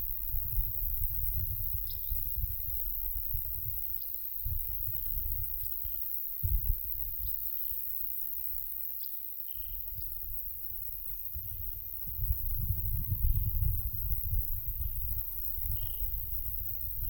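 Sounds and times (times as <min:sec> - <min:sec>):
wind buffeting microphone: 0:00.0 - 0:03.8, 0:04.4 - 0:05.7, 0:06.4 - 0:07.3, 0:11.2 - 0:17.0.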